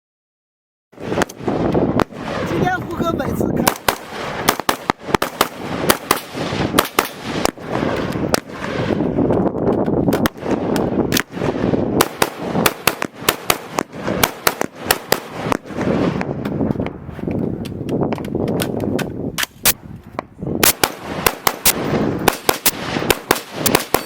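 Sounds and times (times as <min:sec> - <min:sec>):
semi-automatic gunfire: 0:03.6 - 0:16.6, 0:20.6 - 0:24.0.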